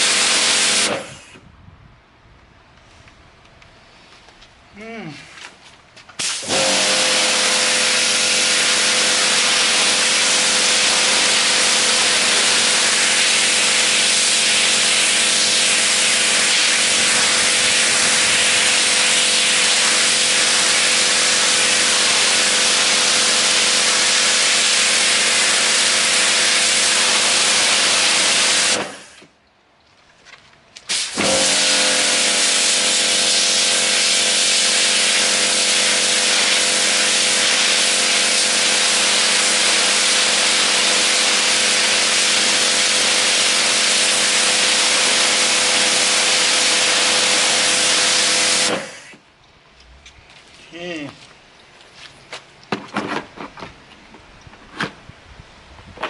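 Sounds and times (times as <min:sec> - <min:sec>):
pressure washer motor hum: 0:00.0 - 0:01.4, 0:06.2 - 0:29.2, 0:30.9 - 0:49.2
water jet hissing: 0:06.2 - 0:29.2.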